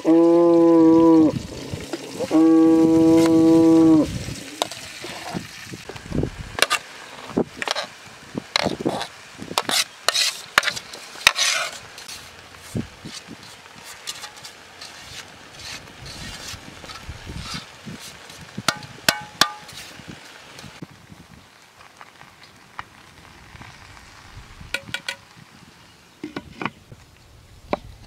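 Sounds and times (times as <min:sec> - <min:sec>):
food sizzling in a pot: 0:00.0 - 0:21.3
metal utensil scraping a pot: 0:08.6 - 0:20.0.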